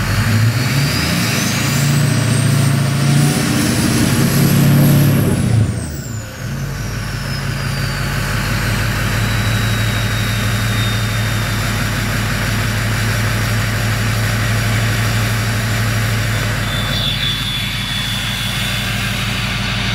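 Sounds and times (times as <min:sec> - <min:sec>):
diesel engine idling: 0:00.0 - 0:19.9
turbo whistle: 0:05.7 - 0:12.1, 0:14.6 - 0:19.9.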